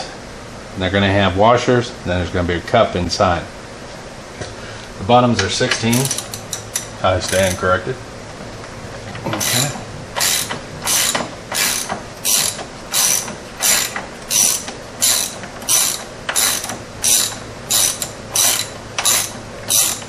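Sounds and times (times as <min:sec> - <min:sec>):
ratchet wrench clicking: 0:05.9 - 0:07.6, 0:09.4 - 0:20.0.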